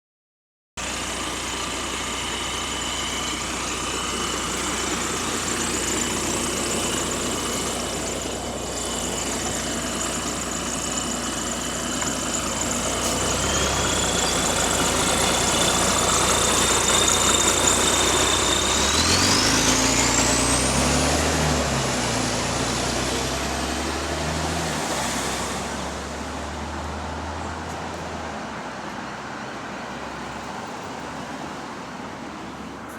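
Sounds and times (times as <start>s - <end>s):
diesel bus engine running: 0.8s - 32.9s
high whine: 0.9s - 20.6s.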